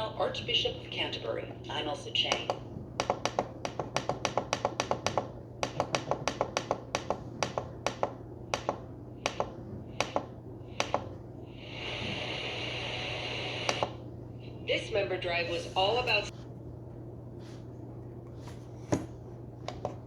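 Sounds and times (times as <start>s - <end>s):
low hum: 0.0s - 20.0s
radio static hiss: 10.8s - 16.3s.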